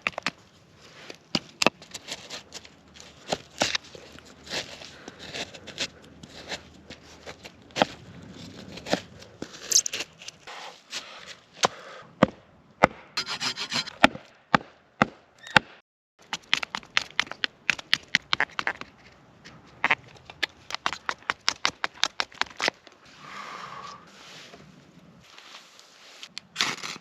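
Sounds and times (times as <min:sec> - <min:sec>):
wood rubbing and scraping: 0:13.2 - 0:14.0
dry wood snapping and cracking: 0:20.1 - 0:23.0.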